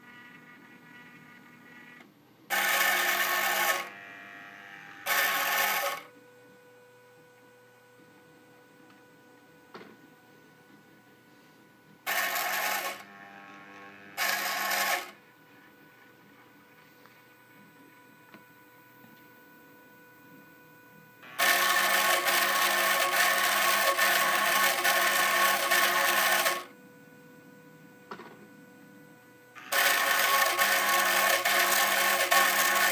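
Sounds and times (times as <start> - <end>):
faint motor whine: 0.0 - 32.9
mini drill motor buzzing: 2.5 - 6.1, 12.1 - 15.2, 21.2 - 26.7, 29.6 - 32.9.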